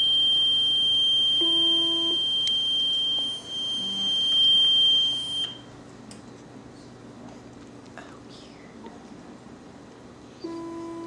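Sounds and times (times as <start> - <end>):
high-pitched electronic alarm tone: 0.0 - 5.7
short lower beep: 0.0 - 5.7.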